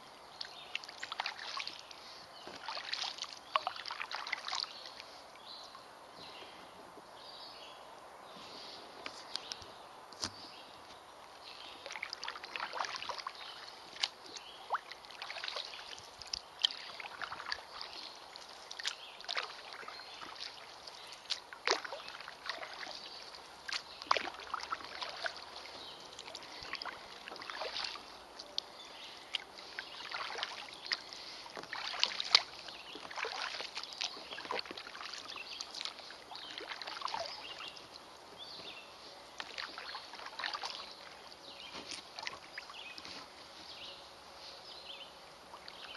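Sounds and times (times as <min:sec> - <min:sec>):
kayak paddle splashing in water: 0:00.3 - 0:05.6, 0:11.4 - 0:28.2, 0:28.9 - 0:43.9
water dripping: 0:00.4 - 0:05.1, 0:11.8 - 0:28.7, 0:29.3 - 0:38.0.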